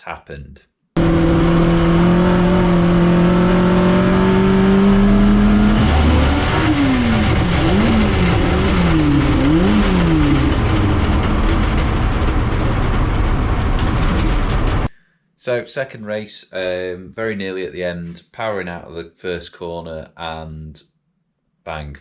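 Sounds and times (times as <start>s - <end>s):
race engine revving: 1.0s - 14.9s
bang: 6.5s - 14.9s.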